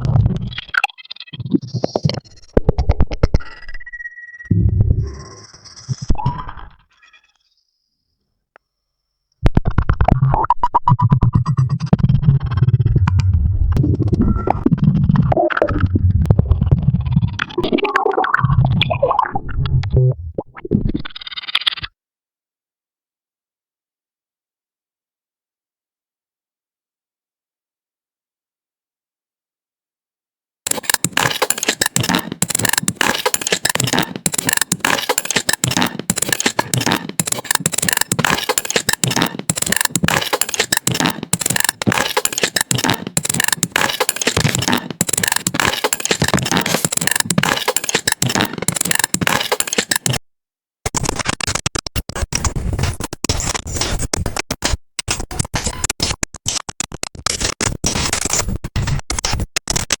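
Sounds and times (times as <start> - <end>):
choppy crackling and scratching: 0.0 - 3.4, 9.6 - 20.6, 30.7 - 50.2, 50.9 - 60.0.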